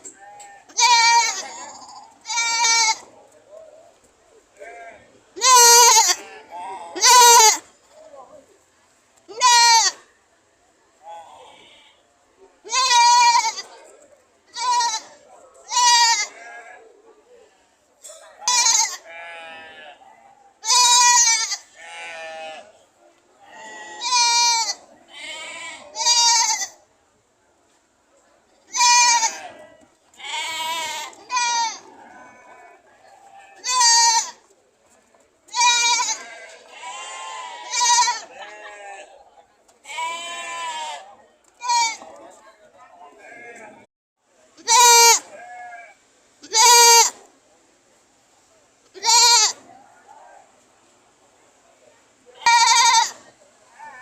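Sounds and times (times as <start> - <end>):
goats bleating: 0.0 - 3.1, 4.6 - 7.6, 9.3 - 10.0, 12.7 - 13.7, 14.5 - 16.8, 18.4 - 20.0, 20.6 - 22.7, 23.4 - 26.8, 28.7 - 34.4, 35.5 - 39.1, 39.8 - 42.1, 44.6 - 47.2, 49.0 - 49.6, 52.4 - 53.2.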